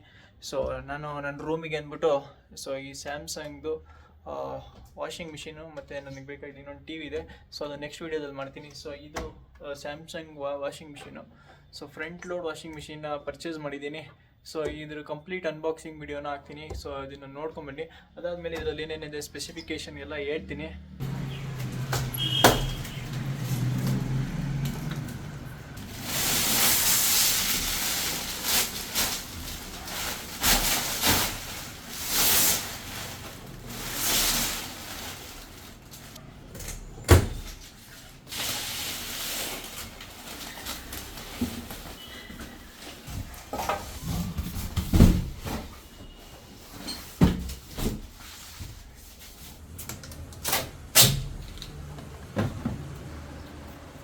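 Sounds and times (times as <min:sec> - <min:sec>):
packaging rustling and ripping: 0:21.3 - 0:36.2, 0:37.5 - 0:42.1.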